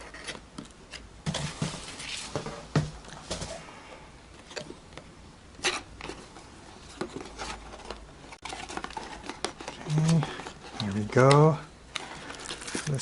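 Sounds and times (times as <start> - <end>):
cardboard box rustling and scraping: 5.6 - 11.2.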